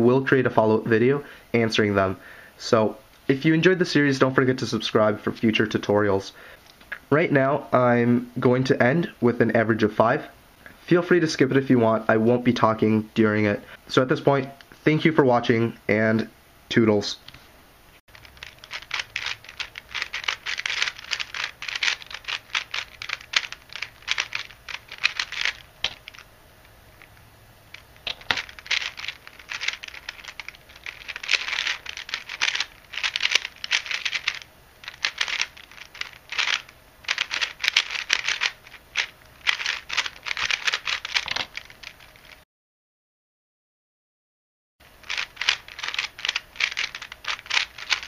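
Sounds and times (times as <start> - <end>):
plastic puzzle cube clicking: 18.2 - 26.2, 27.0 - 42.0, 45.1 - 48.0.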